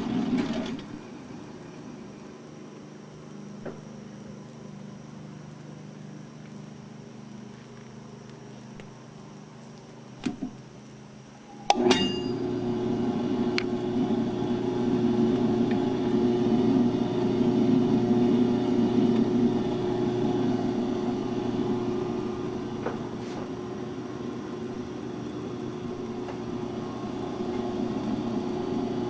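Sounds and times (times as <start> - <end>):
mixer motor humming: 11.4 - 29.0.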